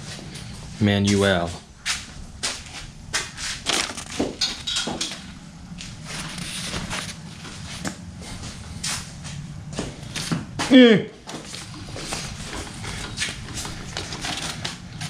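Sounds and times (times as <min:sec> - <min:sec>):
crinkling rustles: 0:02.0 - 0:09.2, 0:11.3 - 0:15.0.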